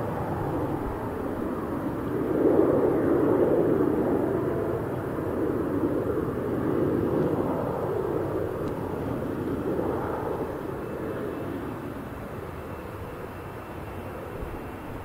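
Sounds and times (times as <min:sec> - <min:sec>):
airliner engines passing: 0:00.0 - 0:15.0.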